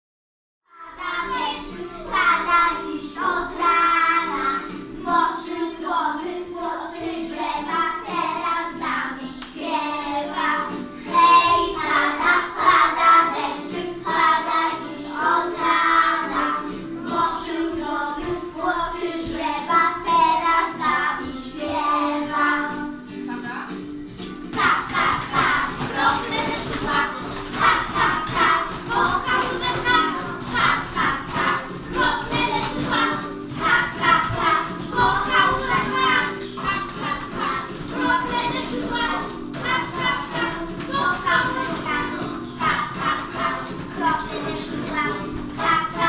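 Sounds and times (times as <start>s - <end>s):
children singing together: 0.8s - 23.0s, 24.5s - 46.0s
musical accompaniment: 0.8s - 46.0s.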